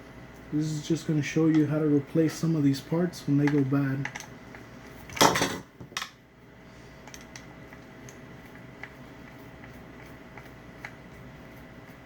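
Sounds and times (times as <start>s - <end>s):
faint steady hum: 0.0s - 12.0s
small clicks from handling parts: 3.4s - 4.3s.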